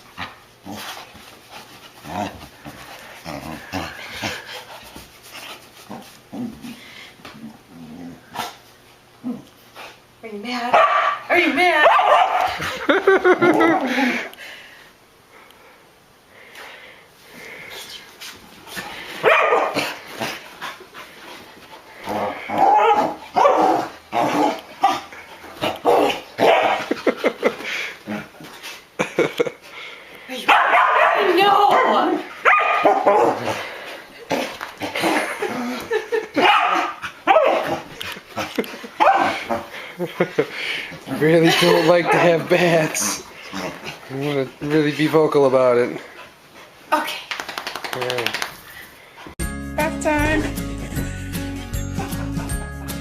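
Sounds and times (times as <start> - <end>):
dog panting: 0.1 - 7.1, 17.4 - 22.6, 37.8 - 46.9
dog grumbling: 2.0 - 4.6, 7.4 - 8.6, 22.0 - 26.2, 41.0 - 44.3
dog barking: 10.7 - 12.6, 19.2 - 19.9, 22.6 - 25.0, 25.8 - 26.9, 30.4 - 33.5, 36.4 - 37.8, 39.0 - 39.4, 42.0 - 42.3.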